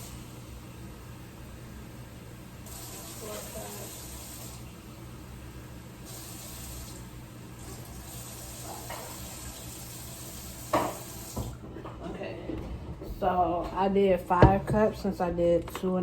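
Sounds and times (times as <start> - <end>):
water running from a tap: 2.6 - 4.8, 6.0 - 11.6.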